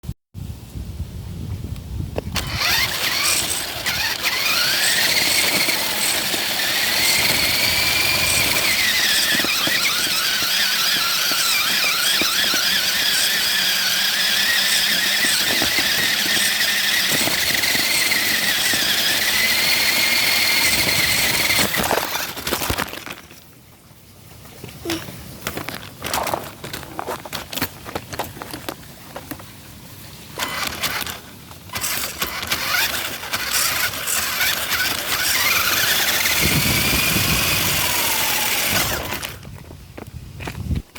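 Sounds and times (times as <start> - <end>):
electric motor whining: 2.4 - 22.8, 30.4 - 39.4.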